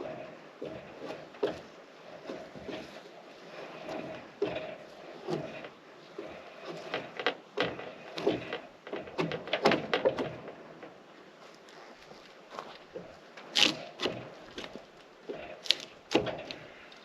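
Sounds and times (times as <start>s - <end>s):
drawknife scraping bark from log: 13.6s - 14.8s, 15.6s - 16.6s.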